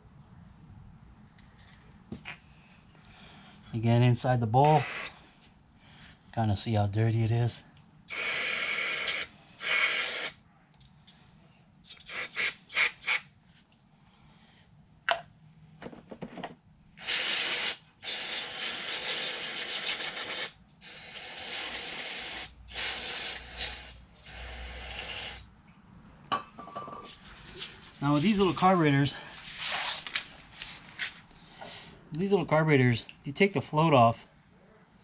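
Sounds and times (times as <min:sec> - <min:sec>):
aerosol spray hissing: 0:04.6 - 0:05.2, 0:08.1 - 0:10.4, 0:12.0 - 0:13.2, 0:17.0 - 0:25.5.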